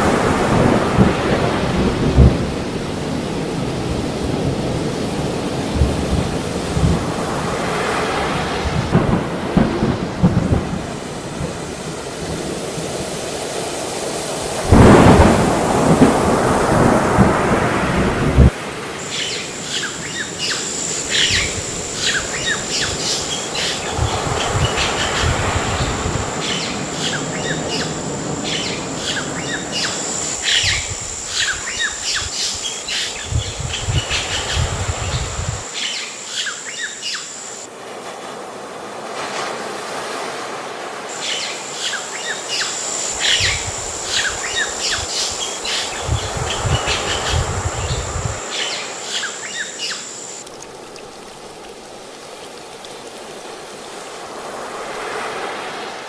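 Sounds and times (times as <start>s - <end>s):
thin high steady tone: 19.6s - 33.2s, 41.2s - 54.6s.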